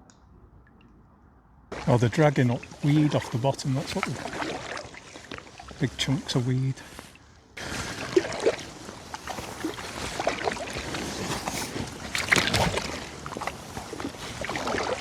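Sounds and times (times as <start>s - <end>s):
water sloshing against hull: 0.0s - 15.0s
paddle splashing water: 1.7s - 15.0s.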